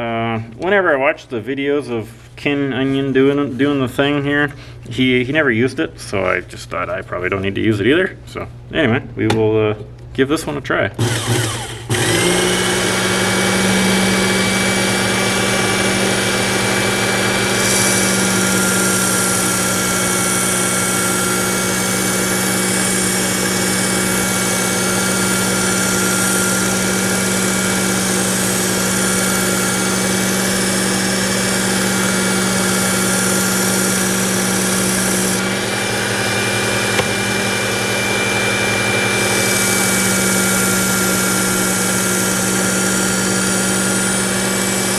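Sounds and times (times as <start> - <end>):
belt sharpener motor whine: 11.0 - 44.9.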